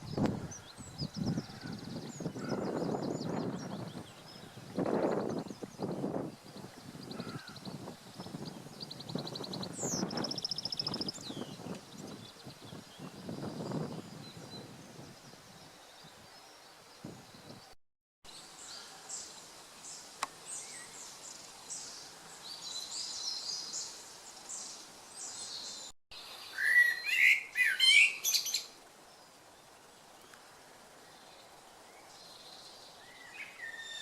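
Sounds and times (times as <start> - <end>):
bird song phrases: 0.0 - 17.8, 18.6 - 34.0
birds high chirping: 0.0 - 17.8, 26.5 - 34.0.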